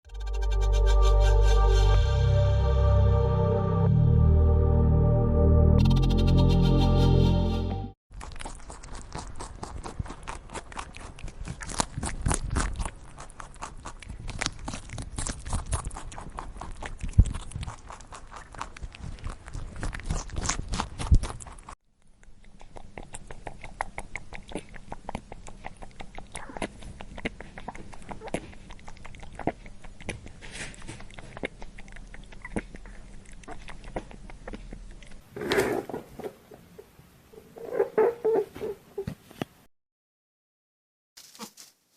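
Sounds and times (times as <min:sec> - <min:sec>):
synthesizer music: 0:00.1 - 0:08.0
rabbits crunching and chewing: 0:08.1 - 0:36.0.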